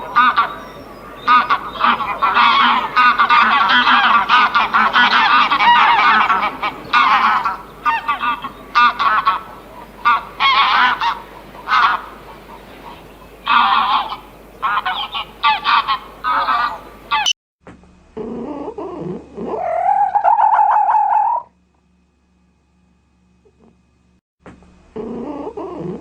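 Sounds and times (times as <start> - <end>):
geese honking: 0.0 - 17.4.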